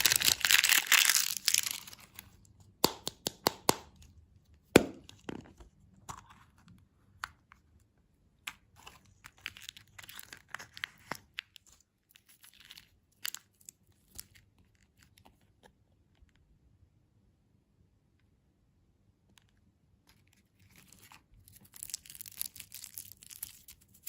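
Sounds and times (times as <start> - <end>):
crunching and chewing candy: 0.0 - 2.4, 20.5 - 24.0.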